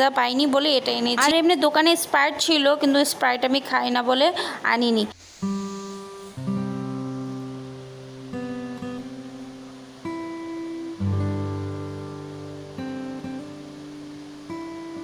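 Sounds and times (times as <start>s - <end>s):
acoustic guitar strumming chords: 5.2s - 15.0s.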